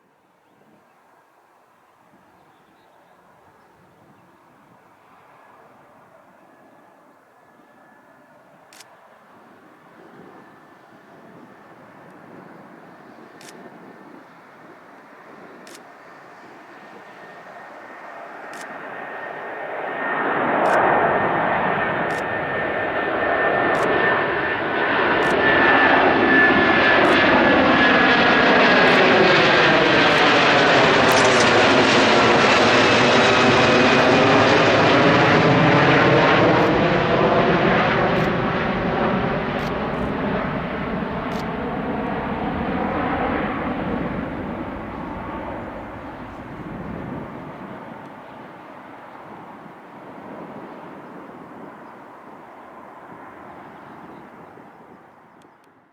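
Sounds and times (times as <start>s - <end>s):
jet engines at takeoff power: 4.1s - 55.9s
high jet whine falling in pitch: 11.3s - 48.5s.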